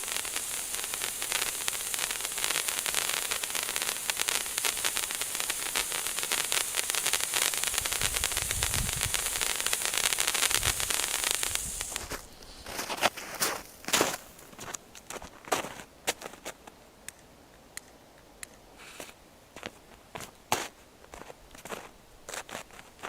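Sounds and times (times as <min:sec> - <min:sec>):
firework fountain hissing crackle: 0:00.0 - 0:14.8.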